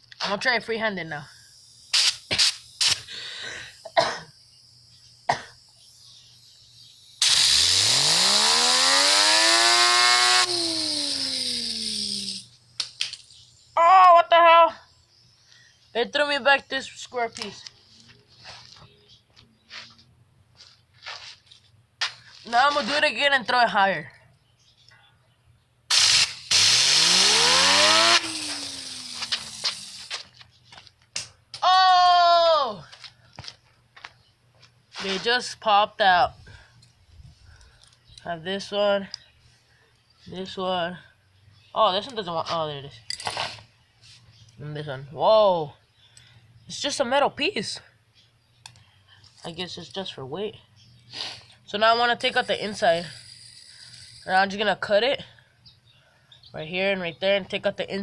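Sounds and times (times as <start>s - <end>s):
hissing blast of air: 1.8s - 3.9s, 25.9s - 30.0s
fidget spinner whirring: 5.8s - 13.8s, 25.9s - 30.2s, 52.2s - 54.5s.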